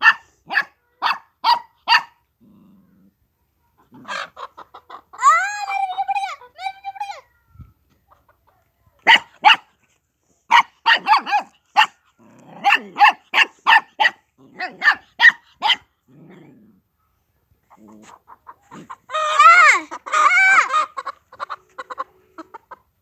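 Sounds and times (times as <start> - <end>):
dog barking: 0.0 - 2.2, 9.0 - 9.8, 10.5 - 15.9
dog growling: 2.4 - 3.2, 12.2 - 13.0, 16.1 - 16.8.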